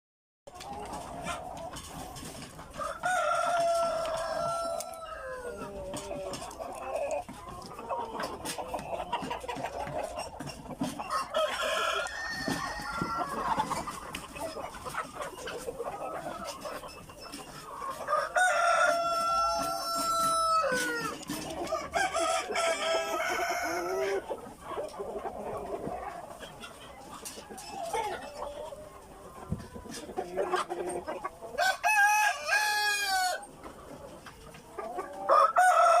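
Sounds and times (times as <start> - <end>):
chickens clucking: 0.5 - 36.0
rooster crowing: 11.1 - 13.4, 31.6 - 33.4, 35.3 - 36.0.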